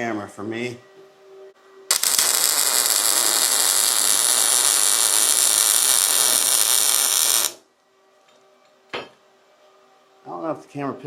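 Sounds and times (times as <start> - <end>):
welding arc hissing and crackling: 1.9 - 7.6.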